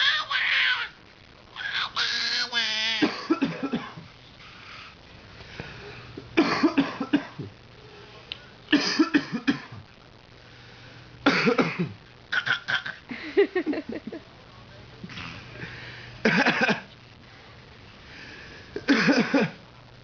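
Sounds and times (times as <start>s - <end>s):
man coughing: 3.0s - 4.0s, 6.4s - 7.5s, 8.8s - 9.8s, 11.3s - 13.0s, 16.3s - 16.8s, 18.8s - 19.6s
toddler coughing: 3.0s - 4.0s.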